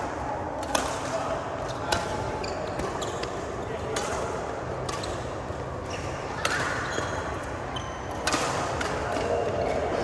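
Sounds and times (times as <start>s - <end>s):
shoes squeaking on court floor: 2.2s - 3.5s.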